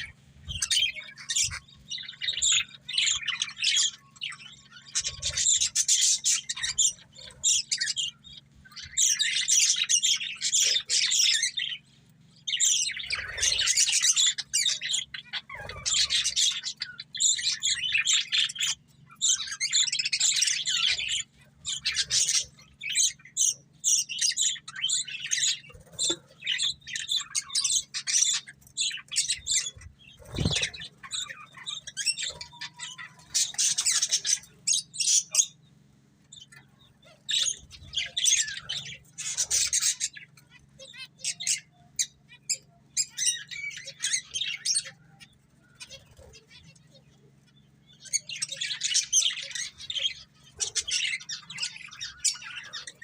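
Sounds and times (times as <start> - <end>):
budgerigars chattering and warbling: 0.0 - 53.0
faint steady hum: 0.0 - 53.0.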